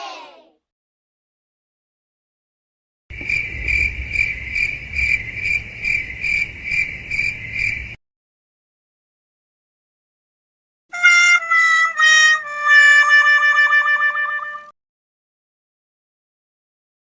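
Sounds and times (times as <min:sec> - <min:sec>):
crickets chirping: 0:03.1 - 0:08.0
low rumble: 0:03.1 - 0:08.0.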